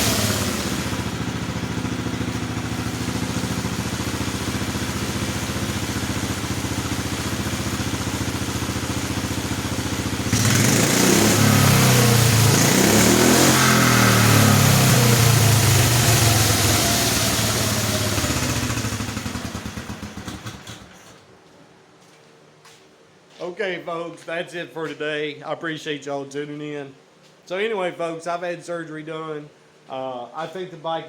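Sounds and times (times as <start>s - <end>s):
small engine idling and revving: 0.0s - 21.2s.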